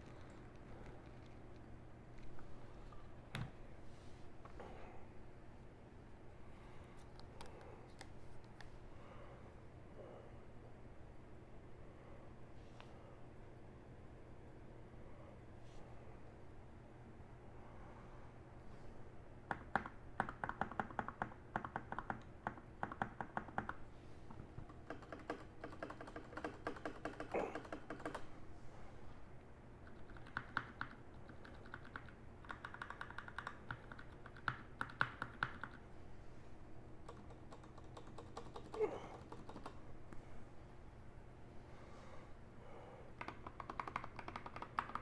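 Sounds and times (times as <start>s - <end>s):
mechanical keyboard typing: 19.5s - 23.8s, 24.7s - 28.3s, 29.8s - 35.8s, 37.0s - 39.8s, 43.2s - 45.0s.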